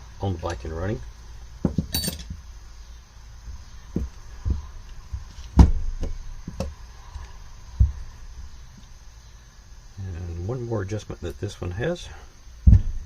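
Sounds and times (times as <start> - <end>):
tools knocking and clicking: 1.6 - 2.4
bright metallic clink: 1.9 - 2.3.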